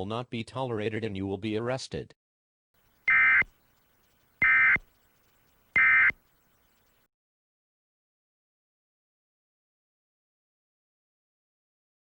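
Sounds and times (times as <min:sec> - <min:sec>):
buzzy warbling digital data bursts: 0:03.1 - 0:06.9.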